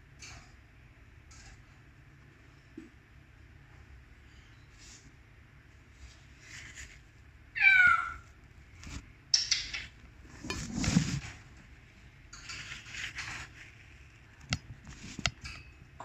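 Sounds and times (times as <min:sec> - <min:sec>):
rustling and scratching: 0:05.8 - 0:07.3, 0:08.7 - 0:09.2, 0:10.2 - 0:15.8
meow-like call: 0:07.6 - 0:08.2.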